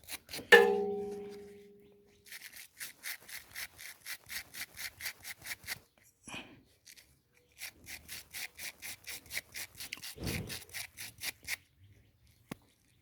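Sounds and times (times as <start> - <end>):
metal part knocked ringing: 0.5 - 1.8
brisk scrubbing: 2.2 - 5.9.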